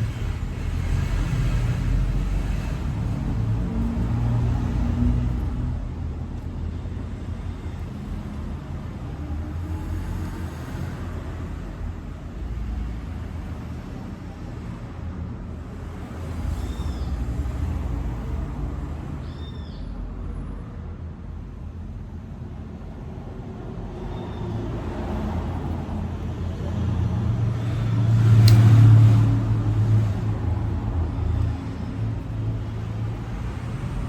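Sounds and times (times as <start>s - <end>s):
road traffic rumble: 0.0s - 34.0s
vehicle passing: 23.7s - 34.0s.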